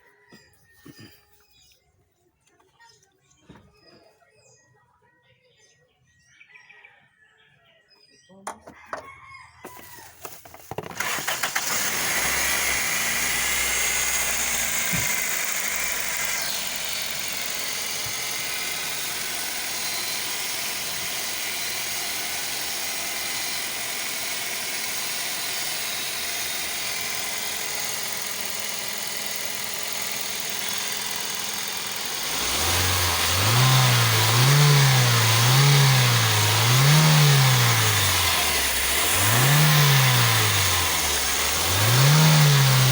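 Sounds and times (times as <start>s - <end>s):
car engine starting and idling: 11.0s - 24.9s
engine revving: 11.0s - 42.9s.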